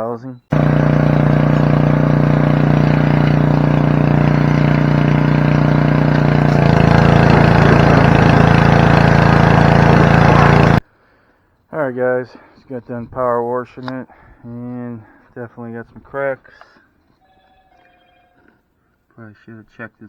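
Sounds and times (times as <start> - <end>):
pressure washer running: 0.5 - 10.8.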